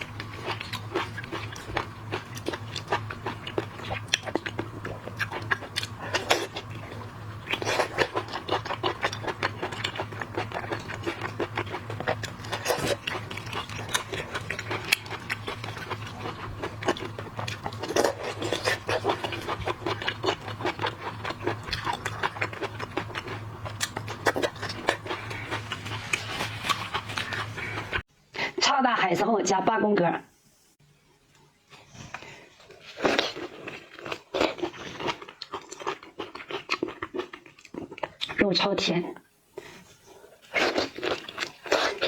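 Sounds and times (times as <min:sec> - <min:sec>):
chewing: 0:00.0 - 0:28.0, 0:31.3 - 0:38.4, 0:39.6 - 0:42.0
steady low hum: 0:00.0 - 0:42.0.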